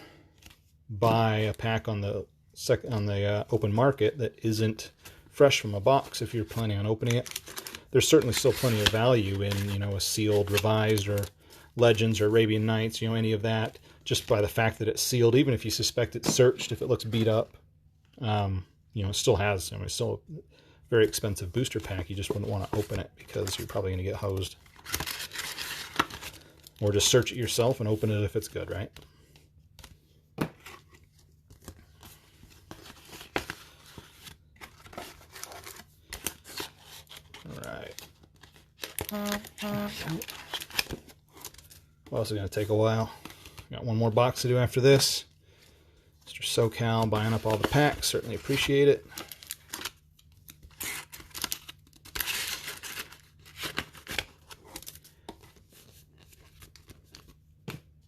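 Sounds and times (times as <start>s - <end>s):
crinkling paper wrappers: 31.5s - 42.2s.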